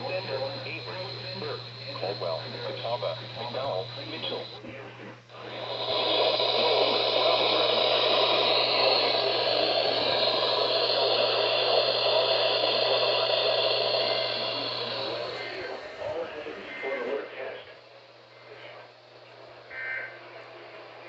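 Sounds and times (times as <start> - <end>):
low hum: 0.0 - 4.6, 5.3 - 16.5
radio static hiss: 0.0 - 21.0.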